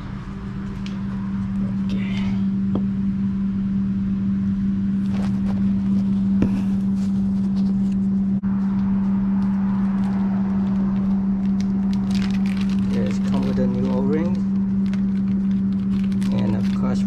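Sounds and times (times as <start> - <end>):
machine humming: 0.0 - 17.0.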